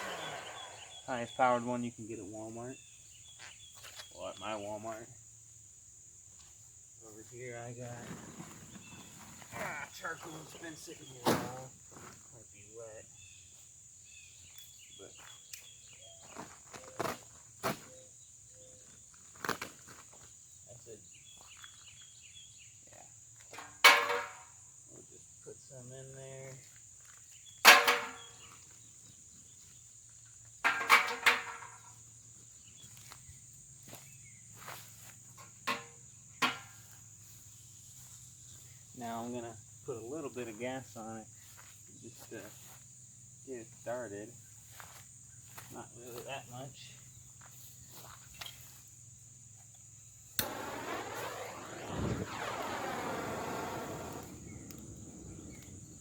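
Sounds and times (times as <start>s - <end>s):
flame rushing: 0.0s - 1.1s, 50.4s - 56.0s
crickets chirping: 0.0s - 56.0s
charcoal clattering into metal: 23.6s - 24.4s, 27.7s - 28.3s, 30.7s - 31.9s, 35.7s - 36.8s
low fire whump: 50.4s - 56.0s.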